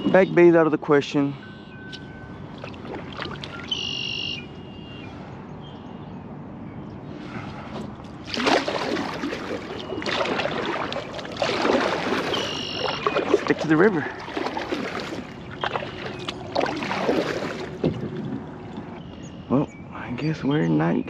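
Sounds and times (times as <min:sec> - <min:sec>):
bird calling: 0:00.0 - 0:07.7, 0:09.2 - 0:21.0
water splashing against kayak: 0:02.4 - 0:04.4, 0:07.2 - 0:19.1.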